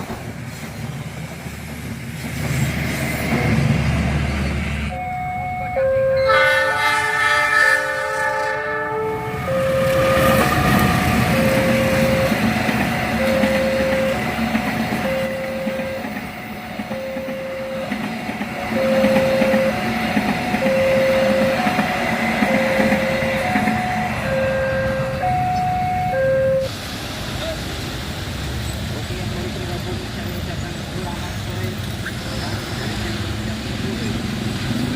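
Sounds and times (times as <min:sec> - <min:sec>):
train wheels rumbling on rail: 0:00.0 - 0:34.9
level crossing warning signal: 0:04.9 - 0:26.7
train horn chord: 0:06.1 - 0:12.6, 0:22.5 - 0:25.4.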